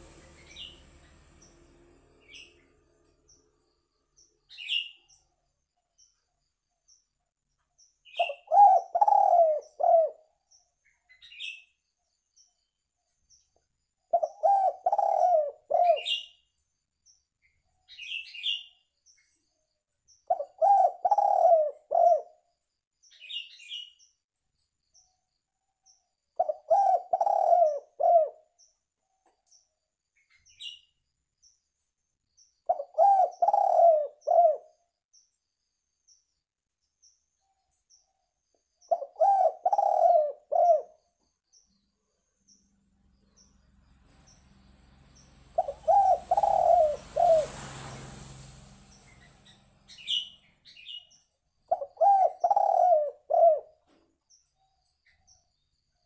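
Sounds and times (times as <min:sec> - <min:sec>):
dove cooing: 0:08.2 - 0:10.3, 0:14.1 - 0:16.2, 0:20.3 - 0:22.4, 0:26.4 - 0:28.5, 0:32.7 - 0:34.7, 0:38.9 - 0:41.0, 0:45.4 - 0:47.6, 0:51.7 - 0:54.0.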